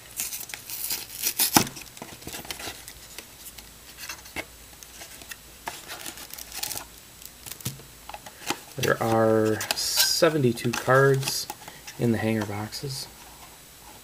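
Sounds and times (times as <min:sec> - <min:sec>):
packaging crinkling: 0:00.0 - 0:13.0
cardboard box tearing: 0:00.2 - 0:02.8.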